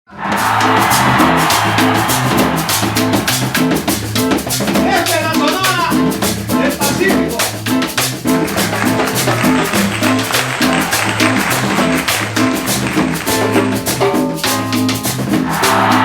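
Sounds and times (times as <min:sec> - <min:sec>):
drums and percussion: 0:00.1 - 0:16.0
repeating bass line: 0:00.4 - 0:05.0, 0:08.2 - 0:14.4.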